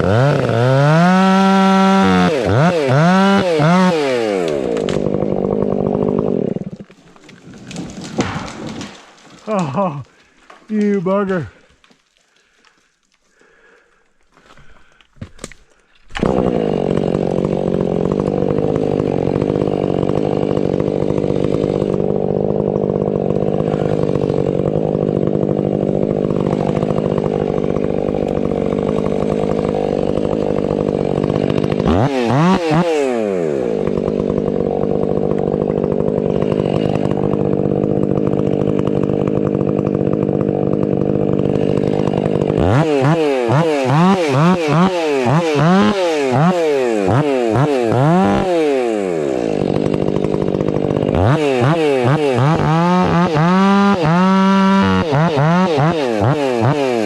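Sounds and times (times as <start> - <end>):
chainsaw cutting wood: 0.0 - 13.8, 14.4 - 57.0.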